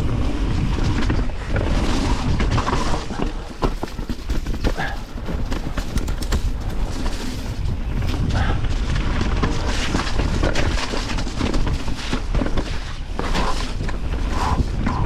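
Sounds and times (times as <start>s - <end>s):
bike rattling over roots and rocks: 0.0s - 15.0s
bike tyre rumble: 0.0s - 15.0s
wind buffeting microphone: 0.0s - 15.0s.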